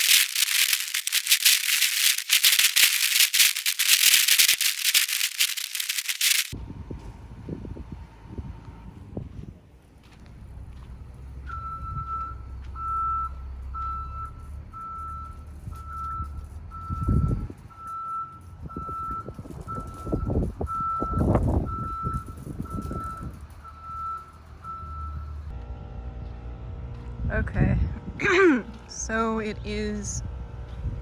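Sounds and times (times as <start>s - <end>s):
wind noise on microphone: 18.7s - 23.4s.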